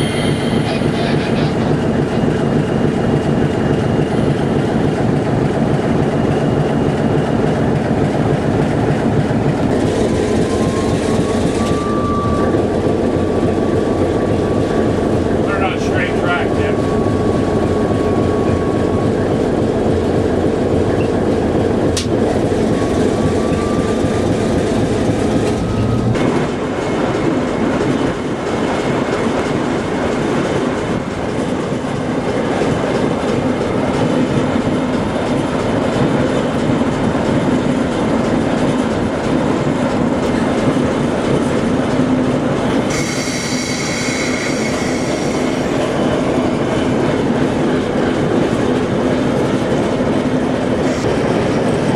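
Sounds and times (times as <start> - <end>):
train rolling along track: 0.0 - 51.9
high wheel squeal: 10.4 - 12.7, 42.8 - 46.1.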